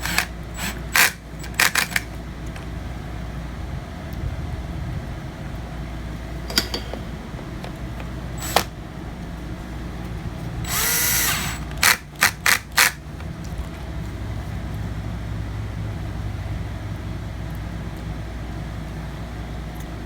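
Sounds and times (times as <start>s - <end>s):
electric screwdriver whirring: 0.0s - 2.1s, 8.4s - 8.7s, 10.7s - 13.0s.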